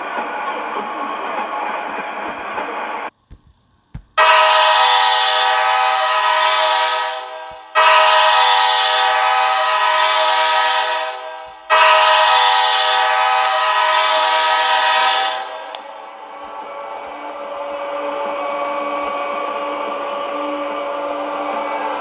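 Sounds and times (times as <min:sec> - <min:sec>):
goal horn blasts: 0:04.2 - 0:15.5.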